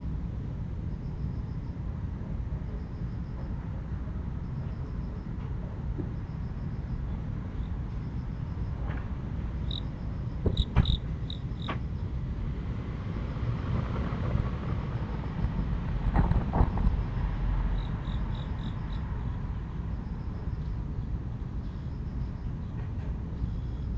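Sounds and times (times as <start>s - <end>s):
distant traffic rumble: 0.0s - 23.9s
insects chirping: 6.0s - 12.4s, 16.8s - 22.7s, 23.3s - 23.9s
sharp clicks or knocks: 10.4s - 11.0s.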